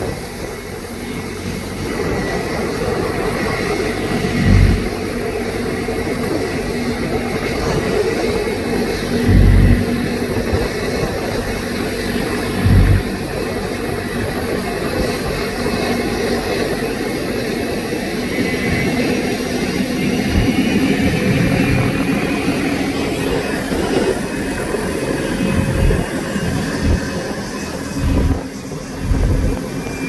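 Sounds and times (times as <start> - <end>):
vehicle engine running: 0.0 - 30.0
low thumps: 9.1 - 11.1, 12.5 - 13.4, 27.9 - 29.7.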